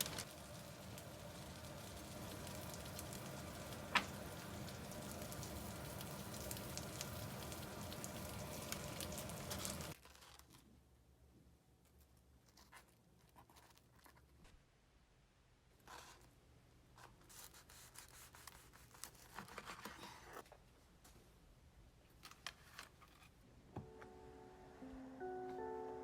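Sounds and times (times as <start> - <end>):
food sizzling in a frying pan: 0.0 - 10.0.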